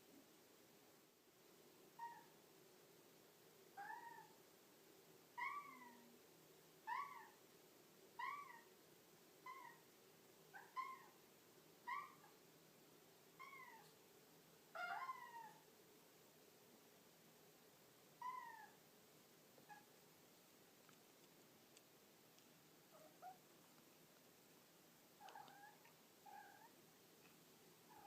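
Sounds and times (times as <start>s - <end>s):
cat meowing: 5.4s - 6.0s, 13.4s - 13.9s, 14.8s - 15.6s.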